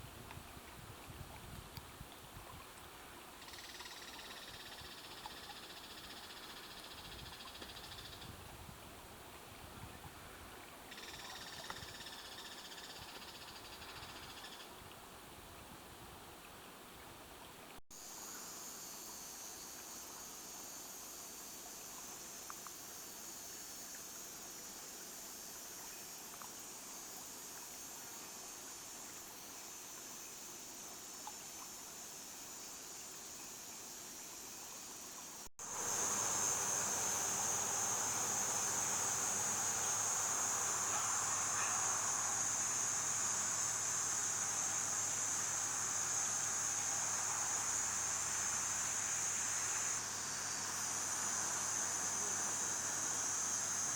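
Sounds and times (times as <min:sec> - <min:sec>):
faint even hiss: 0:00.0 - 0:53.9
high-pitched insect chorus: 0:03.4 - 0:08.4, 0:10.9 - 0:14.7, 0:18.0 - 0:53.9
faint ticks: 0:10.9 - 0:15.0, 0:21.6 - 0:22.9, 0:26.2 - 0:26.6.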